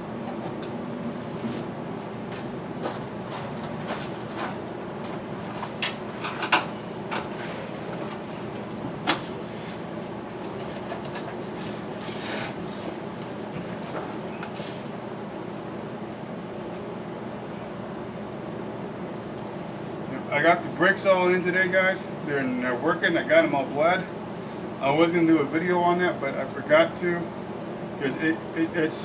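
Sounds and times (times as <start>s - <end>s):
steady background hum: 0.0s - 29.0s.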